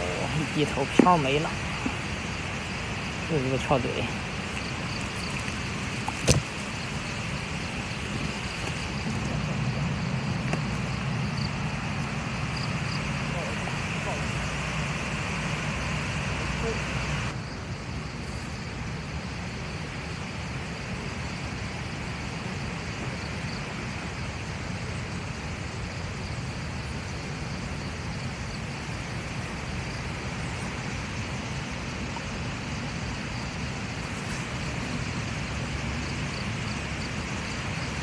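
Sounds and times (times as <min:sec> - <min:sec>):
wind buffeting microphone: 0:00.0 - 0:17.3.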